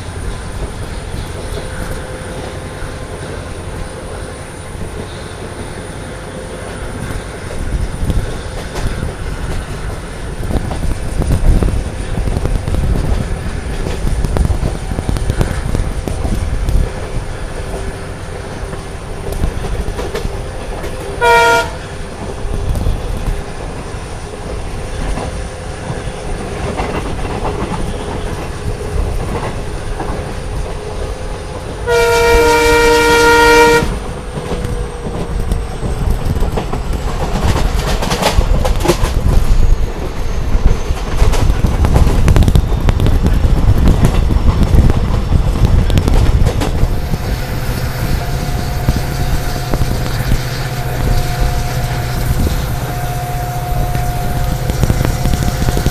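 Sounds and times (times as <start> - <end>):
train rumbling on rails: 0.0 - 55.9
locomotive horn blast: 20.8 - 22.0, 31.8 - 35.2, 47.2 - 55.9.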